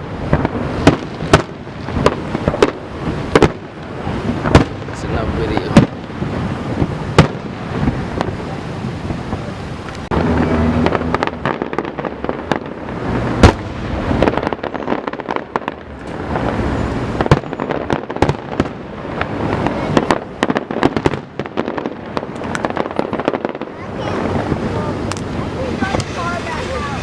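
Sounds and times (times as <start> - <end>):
fireworks bangs and crackling: 0.0 - 27.0.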